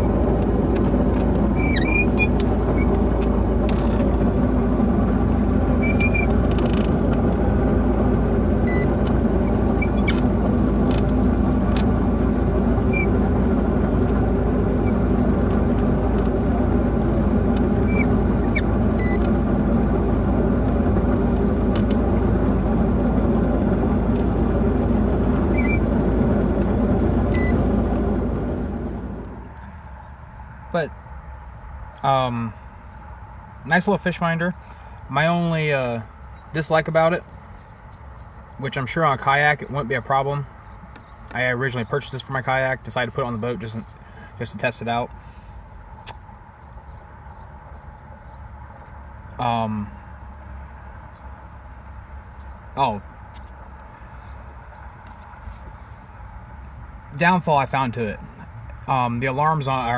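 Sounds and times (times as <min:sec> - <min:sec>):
boat engine running: 0:00.0 - 0:29.8.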